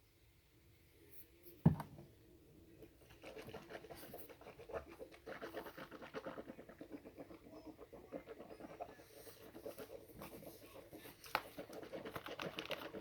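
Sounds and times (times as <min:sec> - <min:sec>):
knock: 0:01.6 - 0:02.1.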